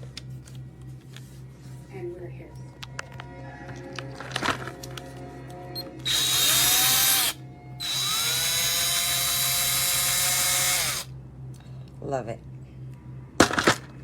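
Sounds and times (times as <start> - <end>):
cordless drill motor whining: 5.8 - 11.1.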